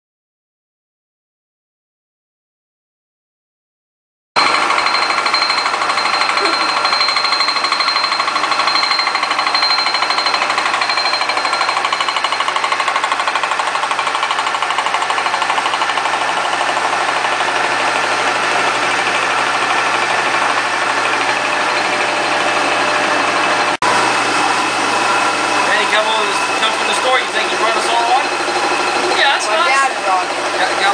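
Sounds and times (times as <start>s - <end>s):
milling machine running: 4.4s - 30.9s.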